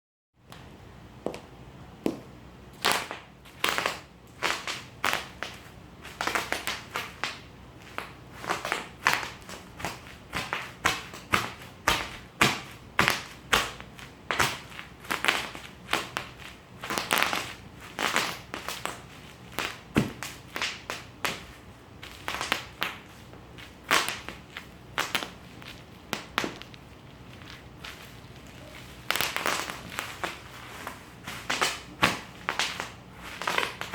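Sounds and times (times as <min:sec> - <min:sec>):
bubble wrap popping: 0:02.0 - 0:33.9.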